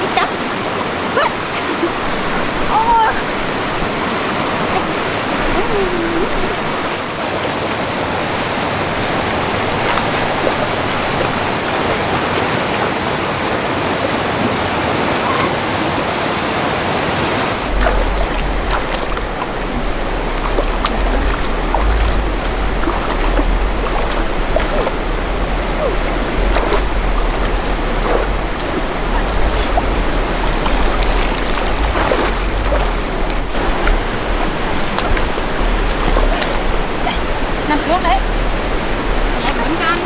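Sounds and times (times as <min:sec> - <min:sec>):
stream water rushing over rocks: 0:00.0 - 0:40.0
low rumble: 0:17.6 - 0:39.8.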